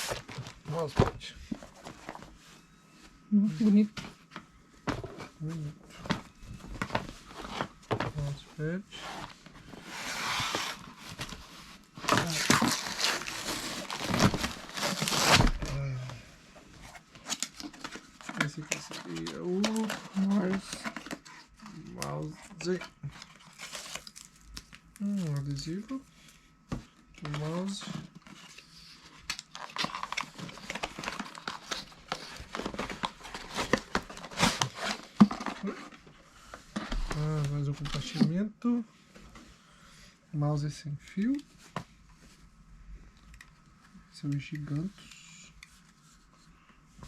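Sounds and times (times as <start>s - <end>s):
plastic wrapping crinkling: 12.0s - 15.5s
packaging being opened: 12.0s - 15.8s, 23.2s - 25.5s, 29.2s - 35.8s.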